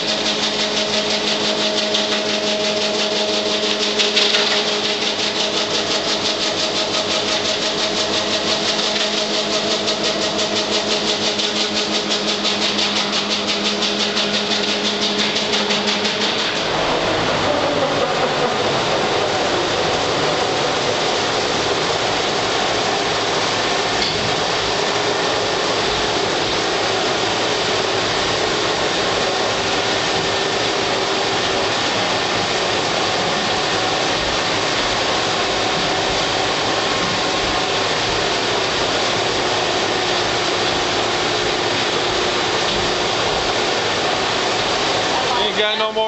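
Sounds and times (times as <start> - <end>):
wood lathe cutting log: 0.0 - 23.0.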